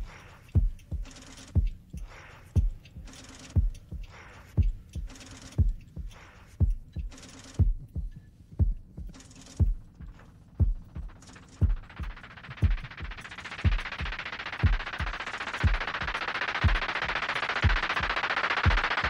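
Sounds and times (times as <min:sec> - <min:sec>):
heartbeat thumps: 0:00.0 - 0:19.0
hissing noise: 0:10.2 - 0:19.0.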